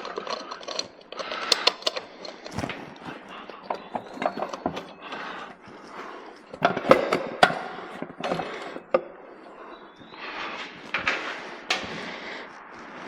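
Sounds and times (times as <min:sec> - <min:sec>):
metal parts clinking and knocking: 0:00.0 - 0:05.1.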